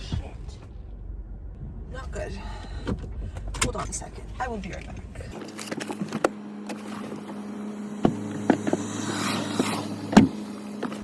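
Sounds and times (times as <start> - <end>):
car idling hum: 0.0 - 11.0
car doors and trunk shutting: 2.7 - 11.0.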